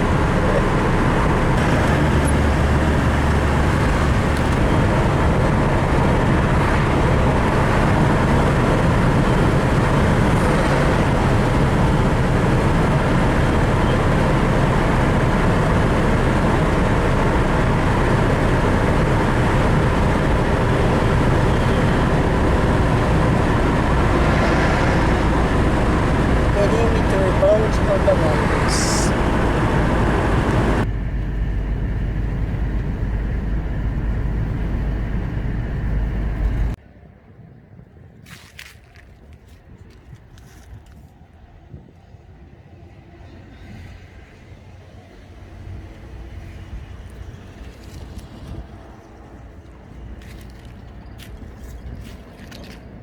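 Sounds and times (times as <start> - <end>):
vehicle road and engine noise: 0.0 - 53.0.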